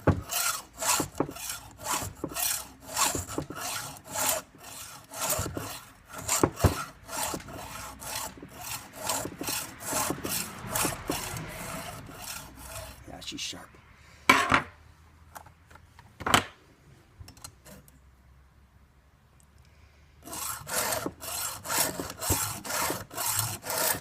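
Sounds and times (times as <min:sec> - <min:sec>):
hand file rasping on chainsaw chain: 0:00.0 - 0:13.0, 0:20.2 - 0:24.0.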